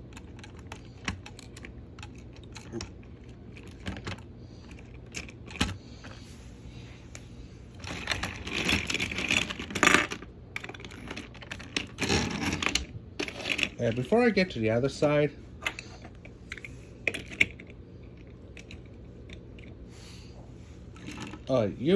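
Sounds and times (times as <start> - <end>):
plastic toy train rattling: 7.8 - 14.1.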